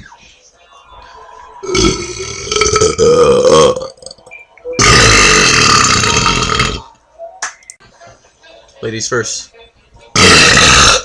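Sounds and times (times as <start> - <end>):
boys belching loudly: 1.6 - 4.1, 4.8 - 6.8, 10.2 - 11.0.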